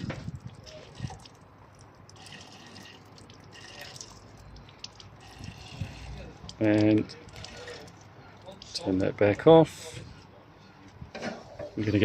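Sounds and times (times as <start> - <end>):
water trickling and dripping: 0.0 - 8.8.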